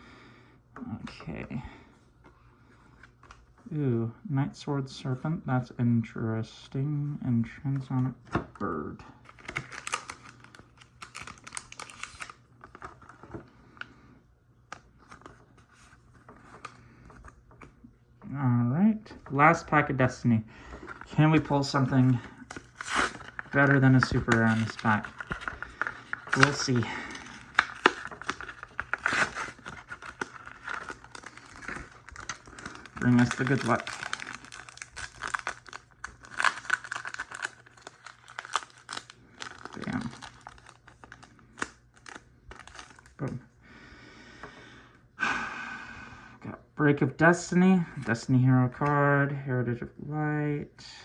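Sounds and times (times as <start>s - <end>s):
foil wrapper crinkling and tearing: 9.2s - 13.4s, 20.8s - 43.4s.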